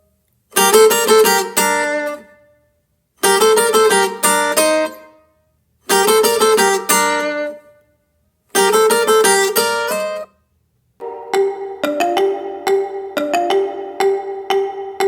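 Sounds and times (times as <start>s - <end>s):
chime-like sound: 11.0s - 15.0s
plucked guitar music stings: 11.0s - 15.0s.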